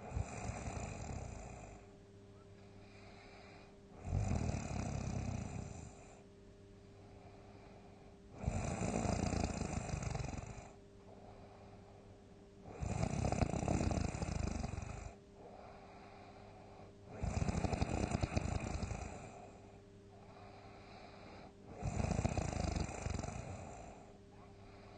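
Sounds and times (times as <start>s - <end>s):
person snoring loudly: 0.0s - 1.7s, 4.0s - 6.0s, 8.4s - 10.8s, 12.7s - 15.2s, 17.1s - 19.4s, 21.7s - 24.0s
quiet breathing: 0.0s - 24.9s.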